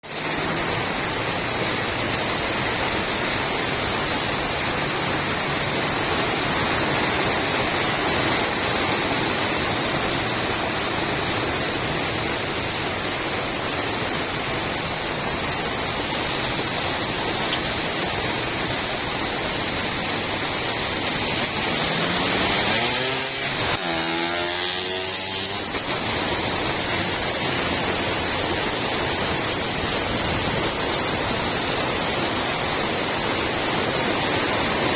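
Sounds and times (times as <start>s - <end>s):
rain falling on a street: 0.0s - 34.9s
motor rising in pitch: 21.2s - 28.3s.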